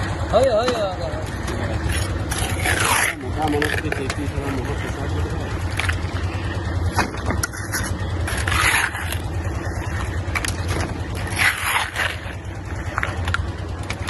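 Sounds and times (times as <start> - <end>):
engine humming: 0.0 - 14.0
scrape: 1.9 - 4.0, 7.4 - 10.1, 11.2 - 12.4.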